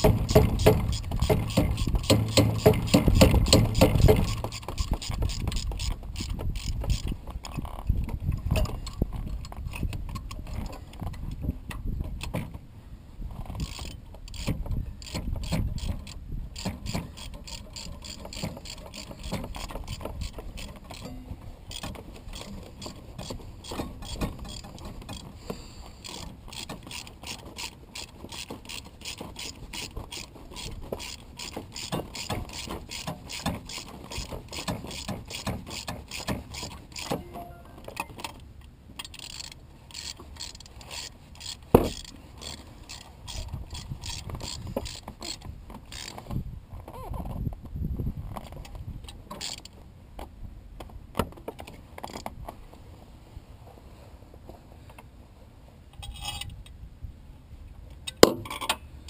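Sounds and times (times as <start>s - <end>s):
ratchet wrench clicking: 0.0s - 7.6s, 13.6s - 21.1s, 21.7s - 25.2s, 26.0s - 37.2s, 39.0s - 46.2s, 49.4s - 49.7s.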